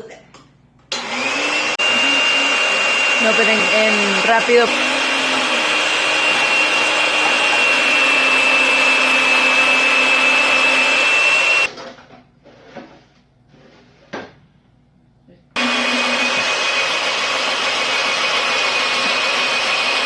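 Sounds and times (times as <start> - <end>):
electric food shredder whining: 0.9 - 11.7, 15.6 - 20.0.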